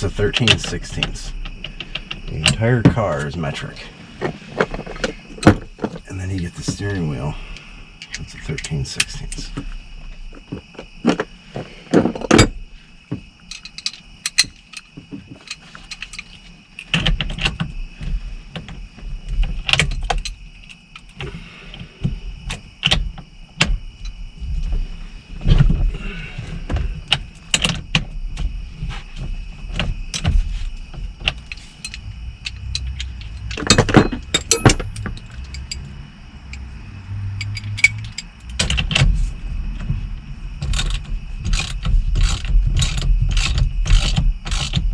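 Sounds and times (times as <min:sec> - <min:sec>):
knocks and handling rumble: 0:00.0 - 0:44.9
metal tools clinking and clicking: 0:13.5 - 0:16.4, 0:31.4 - 0:35.8, 0:37.4 - 0:38.3.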